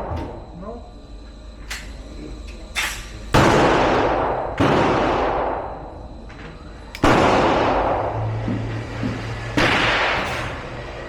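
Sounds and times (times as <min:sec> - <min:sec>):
pistol shots echoing: 0:03.3 - 0:05.9, 0:06.9 - 0:08.2, 0:09.6 - 0:10.6.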